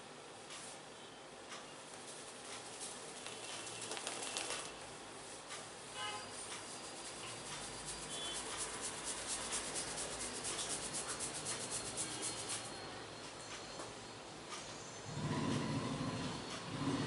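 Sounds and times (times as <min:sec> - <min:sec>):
hands rubbing skin and hair: 0:02.0 - 0:04.8, 0:06.6 - 0:12.7.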